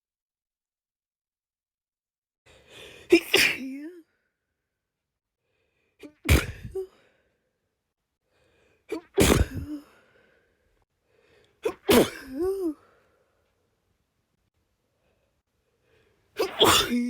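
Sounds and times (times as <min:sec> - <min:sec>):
person sneezing: 0:03.0 - 0:04.0, 0:06.0 - 0:07.0, 0:08.9 - 0:10.0, 0:11.6 - 0:12.9, 0:16.4 - 0:17.0.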